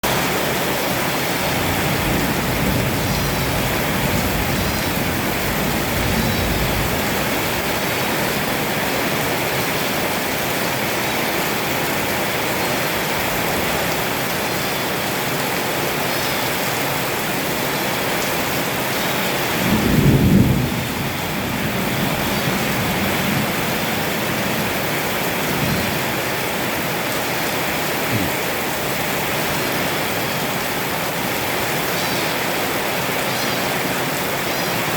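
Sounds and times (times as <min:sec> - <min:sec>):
heavy rain pouring: 0:00.0 - 0:34.9
low thunder rumbling: 0:00.2 - 0:10.5, 0:19.3 - 0:29.6
thunderclap: 0:19.6 - 0:26.6.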